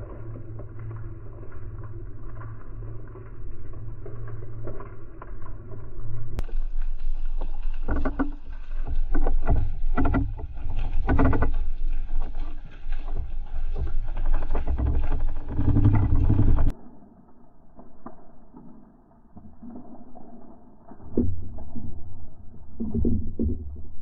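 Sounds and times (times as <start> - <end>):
rushes of water: 0.0 - 16.7
low hum: 0.0 - 24.0.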